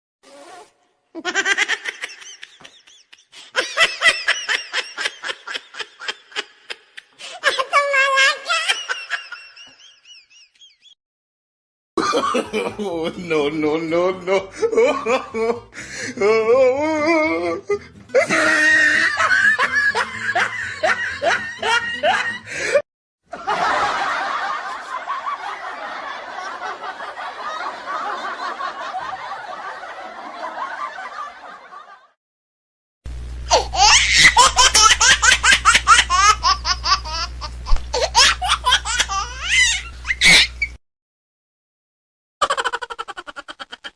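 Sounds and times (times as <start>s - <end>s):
person laughing: 1.2s - 10.9s, 12.0s - 22.8s, 33.5s - 40.7s, 42.4s - 43.9s.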